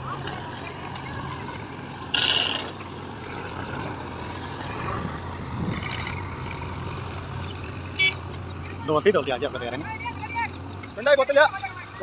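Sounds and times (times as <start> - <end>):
diesel machinery engine running: 0.0 - 12.0.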